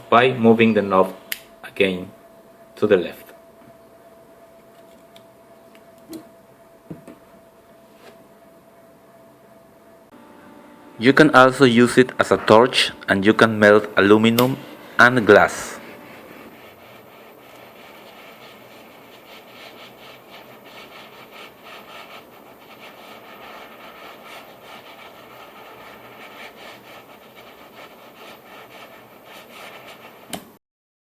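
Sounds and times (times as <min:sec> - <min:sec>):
gas torch flame hissing: 0:10.2 - 0:16.6.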